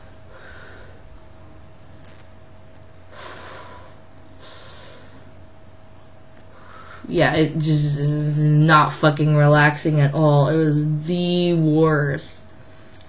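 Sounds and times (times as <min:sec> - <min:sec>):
faint steady hum: 0:00.0 - 0:13.0
woman breathing through nose: 0:03.1 - 0:05.3, 0:06.5 - 0:07.1.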